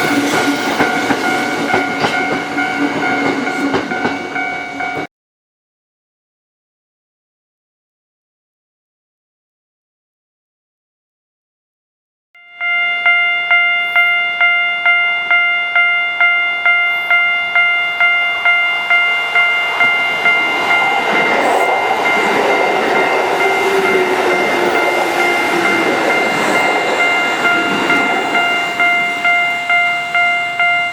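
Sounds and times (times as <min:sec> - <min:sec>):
level crossing electronic bell: 0:00.0 - 0:05.1, 0:12.4 - 0:30.9
train passing: 0:00.0 - 0:05.1, 0:12.6 - 0:30.9.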